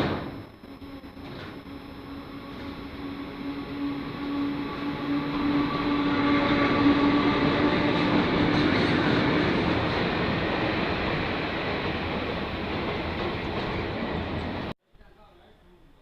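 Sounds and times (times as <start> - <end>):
steady low hum: 0.0 - 7.0
higher tone: 0.0 - 8.5
train running on rails: 0.0 - 14.7.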